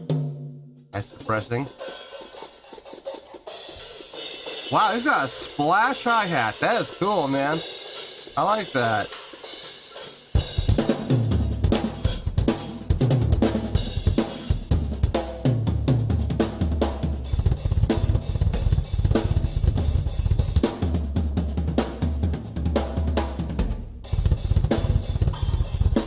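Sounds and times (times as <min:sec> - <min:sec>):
busy drum kit: 0:00.0 - 0:26.0
instrumental rock music: 0:03.5 - 0:14.7, 0:17.2 - 0:20.9, 0:24.1 - 0:26.0.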